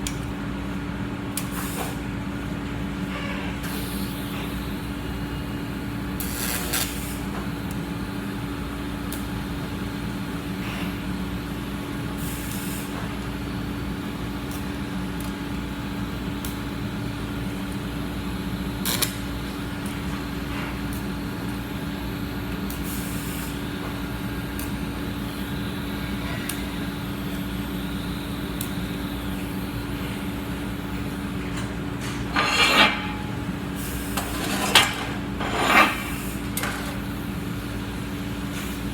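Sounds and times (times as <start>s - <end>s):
welder hum and hiss: 3.6s - 38.9s.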